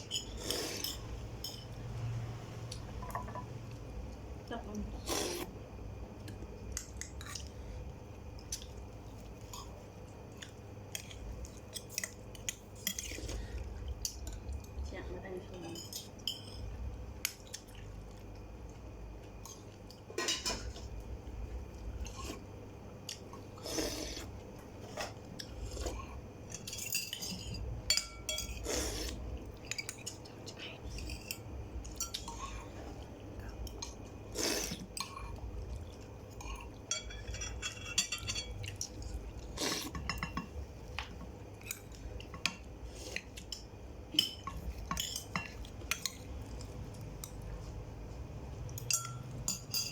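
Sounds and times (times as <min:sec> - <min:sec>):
low background hum: 0:00.0 - 0:49.9
cutlery clinking on dishes: 0:20.2 - 0:20.8, 0:36.9 - 0:38.9, 0:48.8 - 0:49.9.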